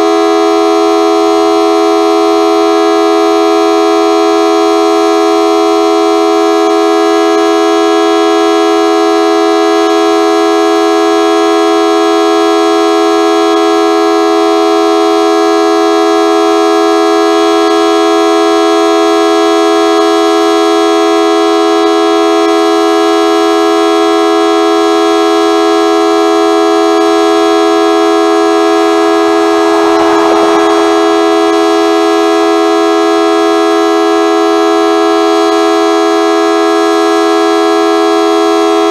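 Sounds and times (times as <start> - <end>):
siren steady low tone: 28.4 - 34.1
rush of noise: 28.9 - 33.4.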